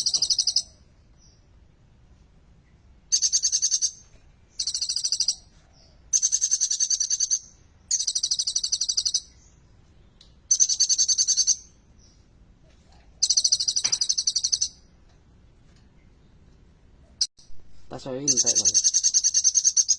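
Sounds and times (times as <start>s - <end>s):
sunbird trilling song: 0.0s - 1.5s, 3.1s - 9.7s, 10.4s - 12.2s, 13.2s - 14.9s, 17.2s - 19.9s.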